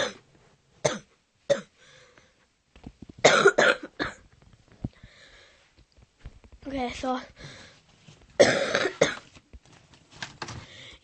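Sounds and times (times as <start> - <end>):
person coughing: 0.0 - 0.2, 3.2 - 4.2, 8.4 - 9.2.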